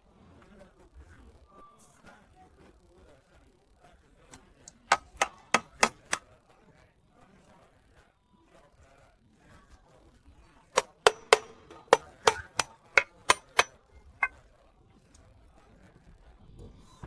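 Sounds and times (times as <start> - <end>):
faint background noise: 0.0 - 17.0
sharp knocks: 4.9 - 6.2, 10.8 - 14.3.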